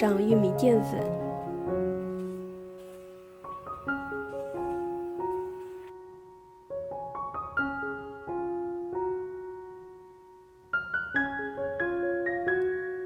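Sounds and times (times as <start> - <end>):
gentle piano music: 0.0 - 13.0.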